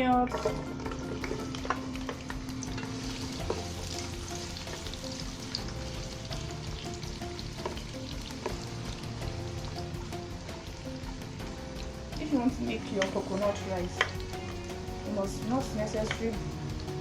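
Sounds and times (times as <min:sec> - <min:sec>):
onions sizzling in oil: 0:00.0 - 0:17.0
utensil stirring clicks: 0:12.9 - 0:14.8.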